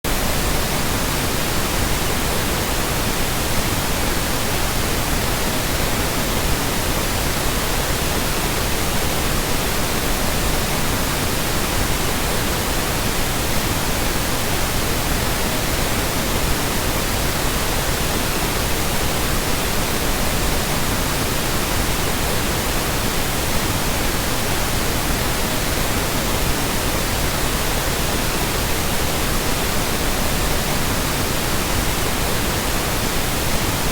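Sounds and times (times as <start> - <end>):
pink noise hiss: 0.1 - 33.9.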